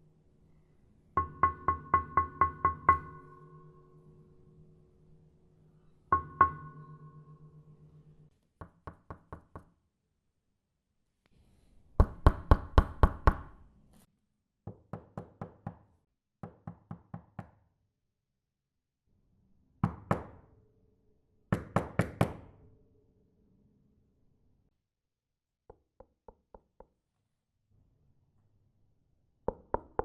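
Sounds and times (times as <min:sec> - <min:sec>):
knocking on a door: 0:14.6 - 0:17.6, 0:21.5 - 0:22.5.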